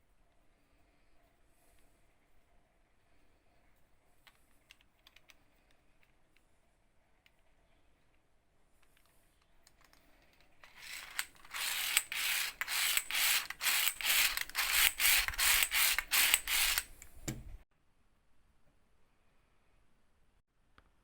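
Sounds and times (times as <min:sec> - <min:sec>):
hand drill rattling whir: 0:10.6 - 0:17.4.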